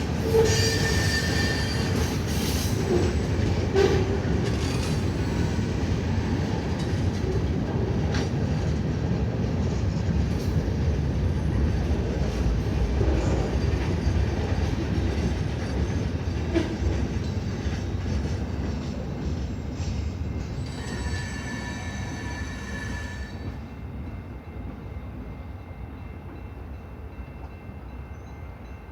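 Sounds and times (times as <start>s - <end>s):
train wheels rumbling on rail: 0.0s - 28.8s.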